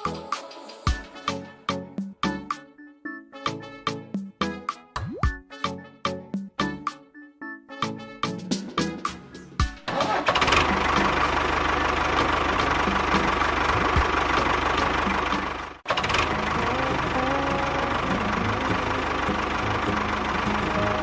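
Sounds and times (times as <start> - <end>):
small engine running: 9.9 - 21.0.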